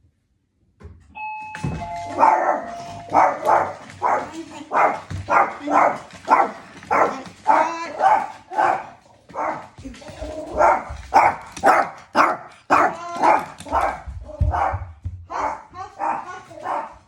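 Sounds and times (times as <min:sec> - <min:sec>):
two-note electronic chime: 0:01.2 - 0:03.5
small dog barking: 0:02.0 - 0:09.8, 0:10.5 - 0:17.0.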